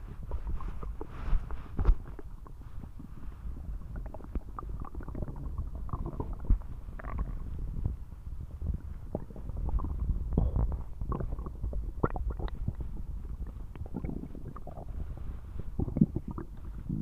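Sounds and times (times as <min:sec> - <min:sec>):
stomach growling: 0:00.0 - 0:17.0.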